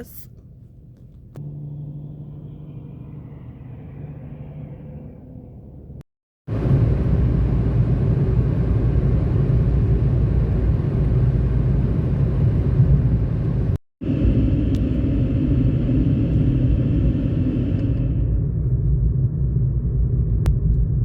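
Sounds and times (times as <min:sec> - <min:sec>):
car road and engine noise: 0:00.0 - 0:21.0.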